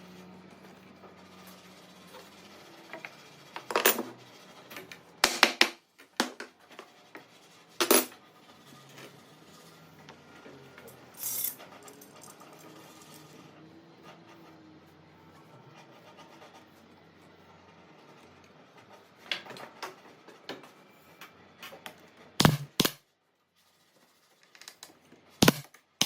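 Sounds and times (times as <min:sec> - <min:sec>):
clinks of small hard objects: 0:11.2 - 0:13.2.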